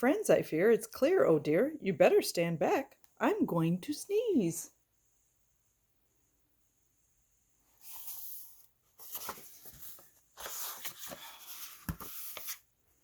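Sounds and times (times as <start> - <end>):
book pages rustling and turning: 7.7 - 13.0.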